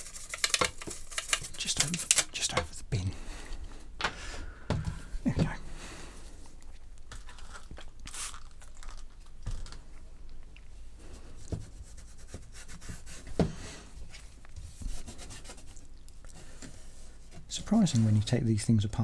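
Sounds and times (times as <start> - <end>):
rubbing plastic: 0.0 - 2.8.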